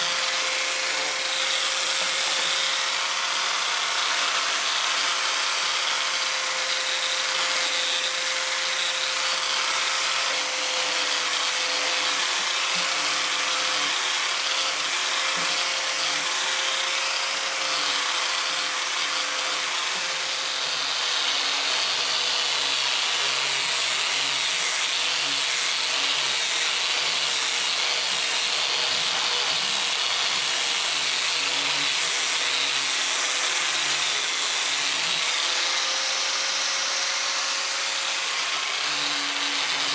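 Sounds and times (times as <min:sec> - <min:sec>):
power tool running on wood: 0:00.0 - 0:39.9.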